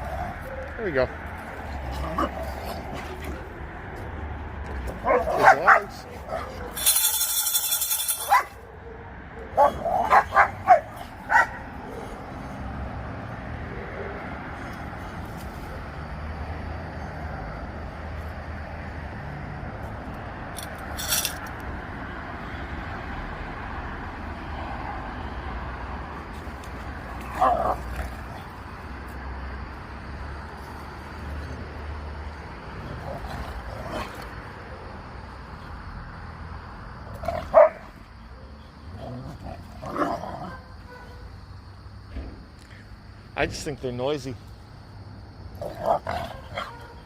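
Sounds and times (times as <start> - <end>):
dog barking: 5.0 - 6.8, 8.2 - 11.7, 37.5 - 37.8, 40.5 - 41.3, 46.3 - 47.0
metallic jingle: 6.6 - 8.5, 20.9 - 21.4.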